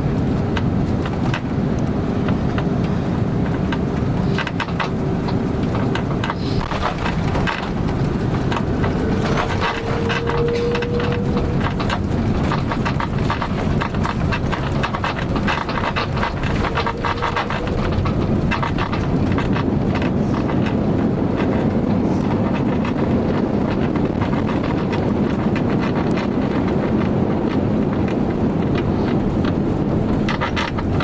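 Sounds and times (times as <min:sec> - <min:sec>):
airliner engine and airflow rumble: 0:00.0 - 0:31.0
cabin fittings rattling and clicking: 0:02.3 - 0:31.0
faint tone in rumble: 0:05.2 - 0:26.5.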